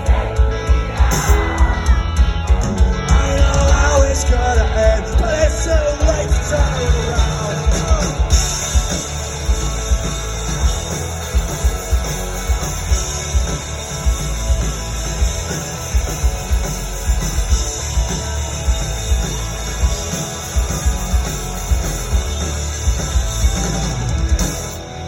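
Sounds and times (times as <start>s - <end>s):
electric guitar: 0.0s - 25.0s
heavy drum beat: 0.0s - 25.0s.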